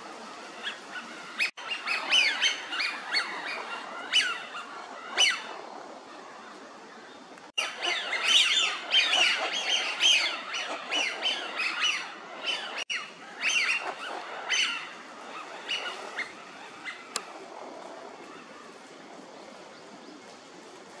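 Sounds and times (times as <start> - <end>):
ducks whistling calls: 0.6 - 5.6, 7.6 - 17.4.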